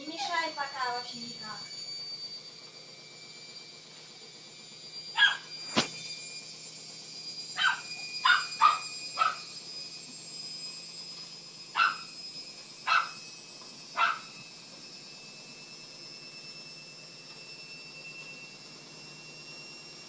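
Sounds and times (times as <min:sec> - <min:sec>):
dog barking: 0:05.2 - 0:05.5, 0:07.6 - 0:09.5, 0:11.8 - 0:12.1, 0:12.9 - 0:13.2, 0:14.0 - 0:14.3.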